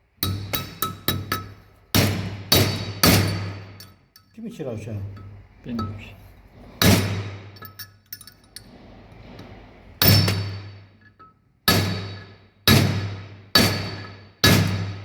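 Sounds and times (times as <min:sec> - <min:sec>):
hammer striking steel: 0:00.2 - 0:04.0, 0:10.0 - 0:15.0
light metal clinks: 0:03.8 - 0:04.4, 0:07.6 - 0:08.6.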